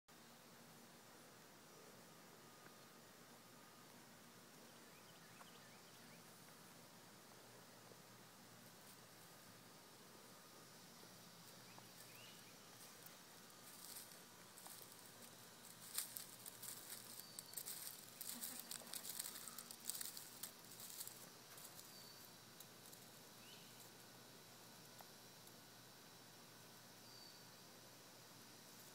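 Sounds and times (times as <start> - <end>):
low background hiss: 0.1 - 28.9
faint high chirps: 10.2 - 22.5, 26.9 - 27.6.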